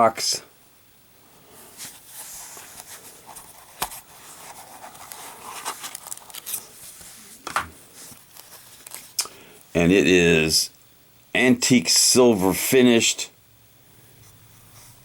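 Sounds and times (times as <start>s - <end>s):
packaging rustling and scraping: 1.6s - 9.2s.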